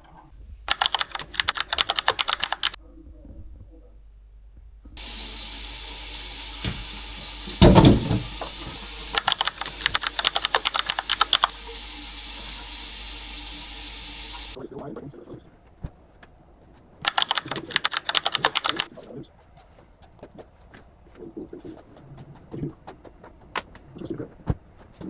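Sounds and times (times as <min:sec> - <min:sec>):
loud knock: 0:05.0 - 0:09.2
running water rushing: 0:05.0 - 0:14.6.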